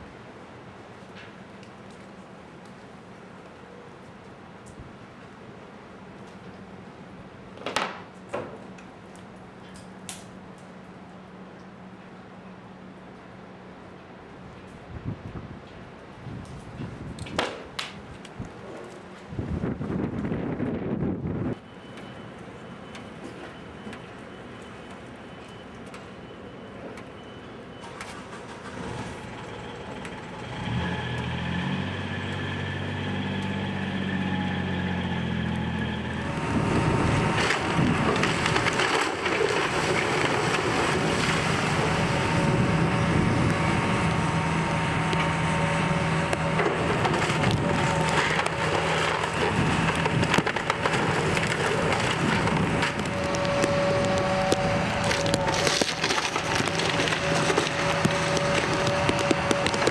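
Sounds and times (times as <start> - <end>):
engine revving: 30.4 - 38.8, 40.7 - 59.9
timber cracking and splintering: 37.2 - 41.9, 46.4 - 59.9.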